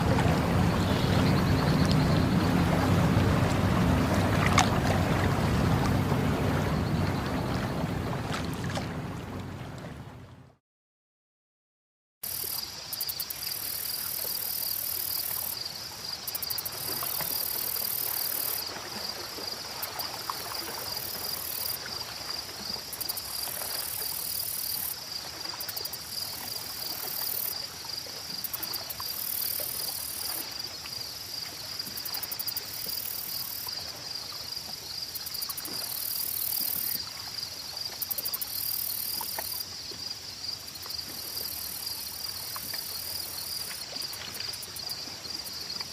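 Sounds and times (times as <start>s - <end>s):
insects trilling: 0.6s - 2.7s, 12.2s - 18.7s, 19.4s - 22.0s, 22.6s - 45.9s.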